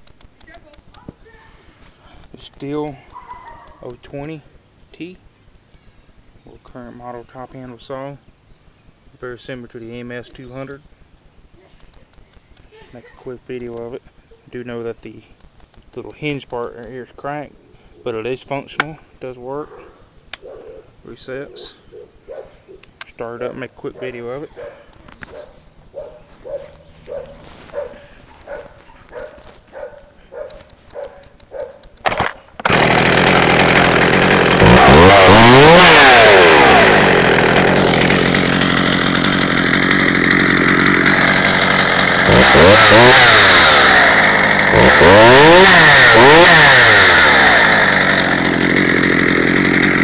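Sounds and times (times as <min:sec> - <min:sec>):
chainsaw starter pulls: 0:30.7 - 0:50.0
chainsaw engine revving: 0:32.0 - 0:50.0.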